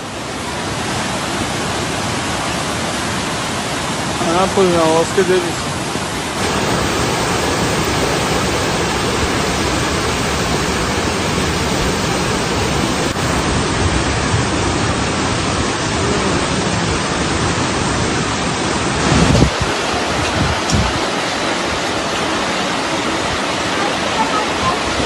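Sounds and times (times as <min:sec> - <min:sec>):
floodwater rushing: 0:05.6 - 0:25.0.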